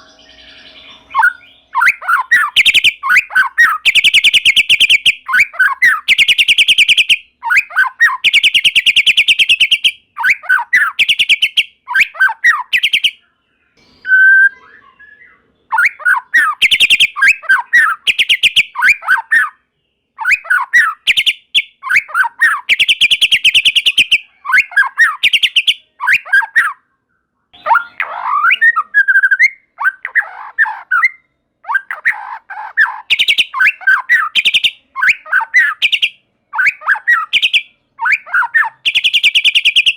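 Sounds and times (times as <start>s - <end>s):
bird gliding whistles: 0.0s - 13.1s, 14.0s - 19.6s, 32.8s - 39.9s
bird singing rattling notes: 0.0s - 13.1s, 13.8s - 19.6s, 20.2s - 26.8s, 27.6s - 39.9s.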